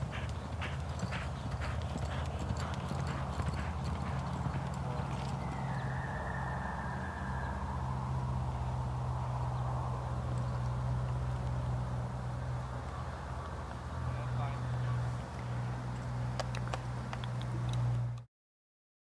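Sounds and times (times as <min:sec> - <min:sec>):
horse hoofbeats clip-clopping: 0:00.0 - 0:06.0, 0:10.2 - 0:18.2
steady low hum: 0:00.0 - 0:18.2.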